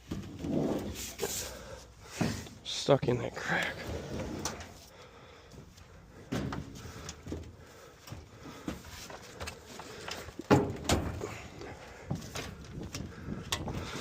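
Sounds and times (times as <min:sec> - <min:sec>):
scrap metal clunks and scrapes: 0:00.0 - 0:02.6, 0:03.5 - 0:04.9.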